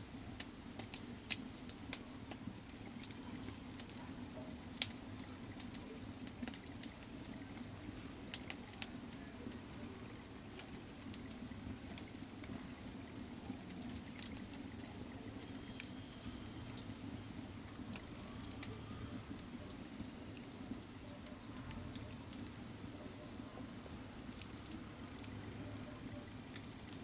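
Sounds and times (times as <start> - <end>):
campfire crackling and popping: 0.0 - 27.0
steady low hum: 0.0 - 27.0.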